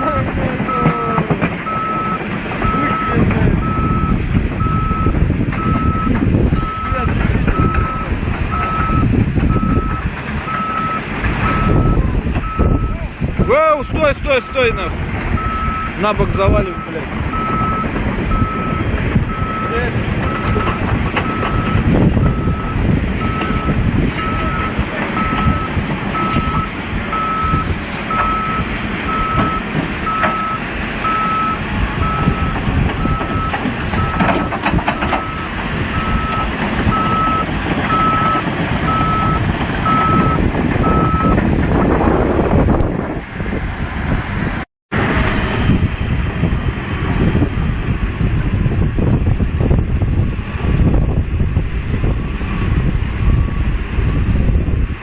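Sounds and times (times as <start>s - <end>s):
heavy engine rumble: 0.0s - 55.0s
reversing alarm beeping: 0.7s - 13.7s, 14.4s - 16.0s, 16.6s - 41.4s.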